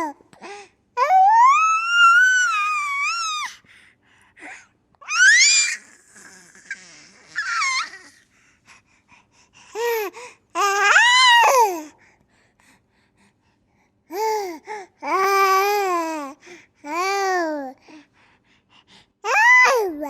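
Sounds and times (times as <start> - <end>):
baby squealing and babbling: 5.0 - 8.2.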